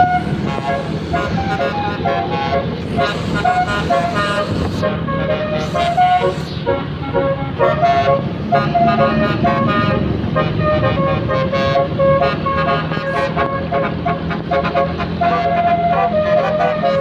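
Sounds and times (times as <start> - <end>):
bus horn playing a melody: 7.1 - 17.0.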